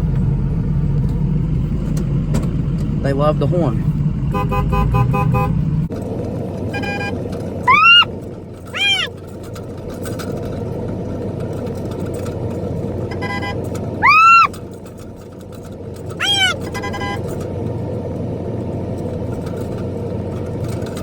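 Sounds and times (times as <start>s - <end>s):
truck engine running: 0.0s - 21.0s
truck horn honking: 4.3s - 5.6s, 6.8s - 8.1s, 13.1s - 14.4s, 16.2s - 17.3s
loud high calls: 7.7s - 8.1s, 8.8s - 9.1s, 14.0s - 14.6s, 16.2s - 16.7s.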